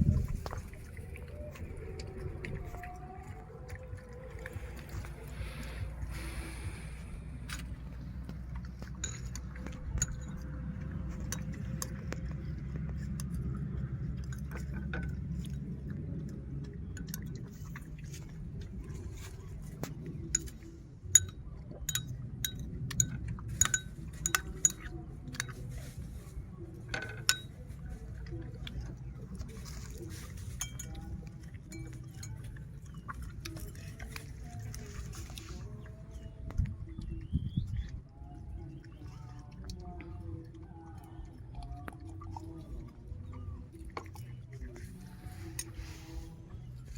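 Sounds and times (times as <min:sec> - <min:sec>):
steady low rumble: 0:00.0 - 0:46.9
utensil clinking against dish: 0:08.8 - 0:12.0, 0:20.3 - 0:25.7, 0:26.8 - 0:27.8, 0:30.3 - 0:34.5.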